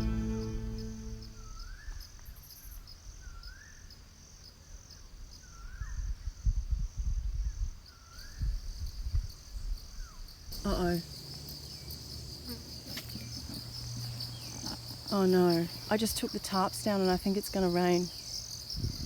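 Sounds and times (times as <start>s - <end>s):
music: 0.0s - 1.6s
insects chirping: 0.0s - 19.0s.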